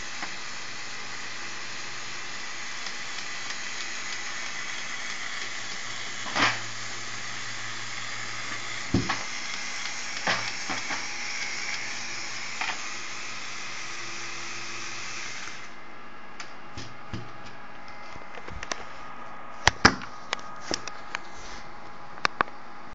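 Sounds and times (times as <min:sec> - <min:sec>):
toy motor whirring: 0:00.0 - 0:15.7.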